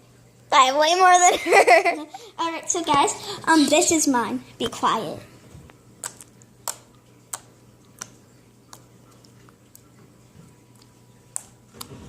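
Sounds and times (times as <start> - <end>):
slime clicking and popping: 6.0 - 8.9.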